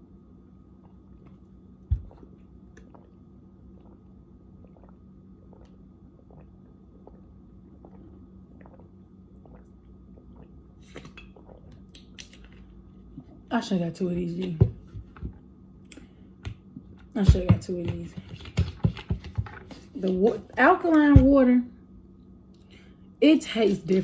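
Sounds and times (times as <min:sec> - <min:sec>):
person chewing food: 0:00.8 - 0:12.6.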